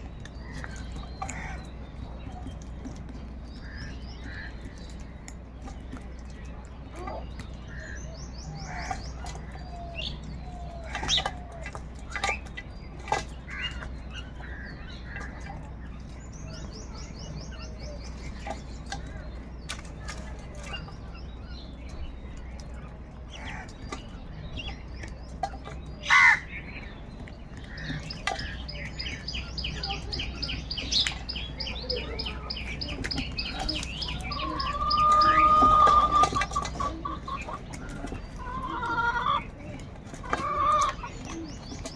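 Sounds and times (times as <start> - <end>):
small birds chirping: 0.0 - 41.9
crows cawing: 1.3 - 1.7, 26.0 - 26.5.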